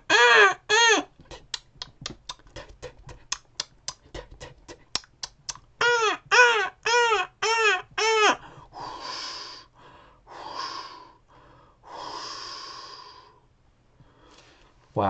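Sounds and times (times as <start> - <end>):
man panting: 2.4 - 5.0, 8.4 - 13.4
man imitating bird cries: 5.8 - 8.4.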